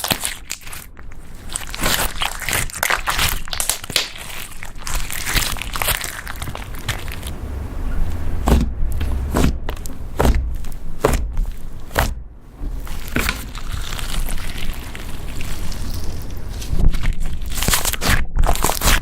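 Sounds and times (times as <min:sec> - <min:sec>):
slime squishing: 0:00.0 - 0:19.0
soft thuds: 0:06.5 - 0:14.2.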